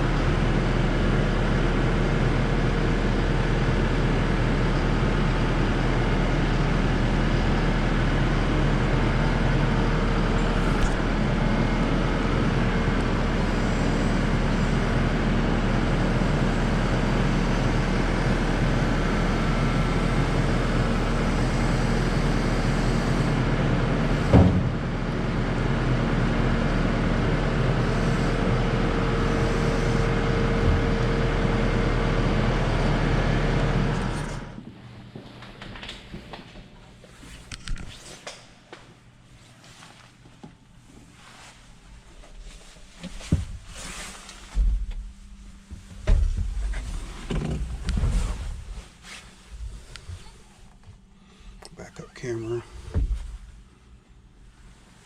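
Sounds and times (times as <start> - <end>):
engine running steadily: 0.0 - 34.7.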